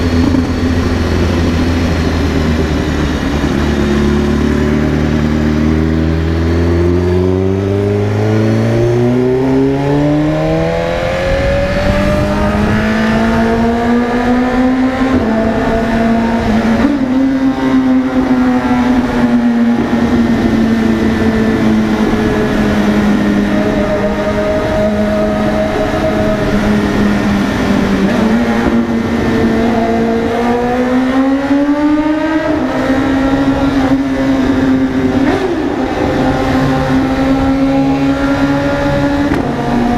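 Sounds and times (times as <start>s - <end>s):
motorcycle engine accelerating: 0.0s - 39.9s.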